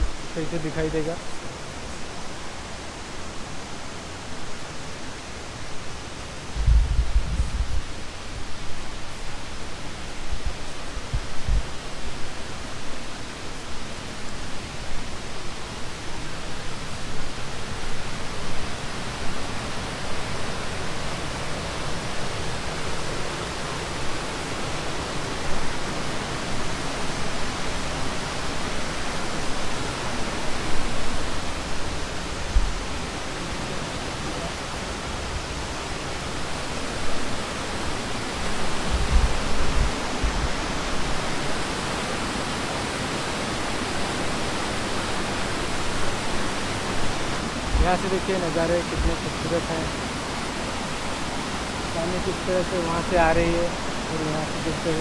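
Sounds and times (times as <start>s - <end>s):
waterfall rushing: 0.0s - 55.0s
low thumps: 6.6s - 7.8s.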